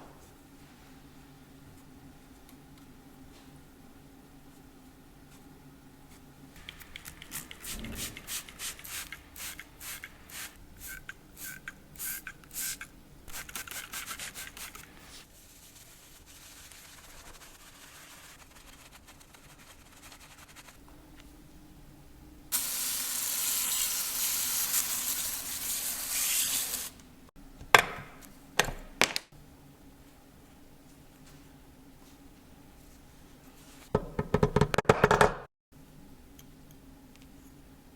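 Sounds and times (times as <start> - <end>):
aerosol spray hiss: 22.5 - 27.0.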